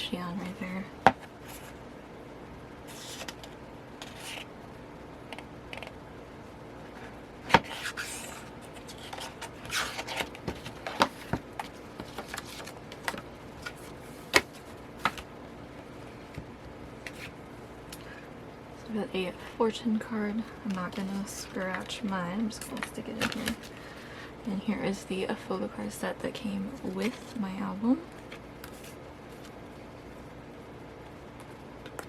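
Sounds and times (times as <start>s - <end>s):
paper rustling and sliding: 2.9s - 4.5s, 6.9s - 15.2s.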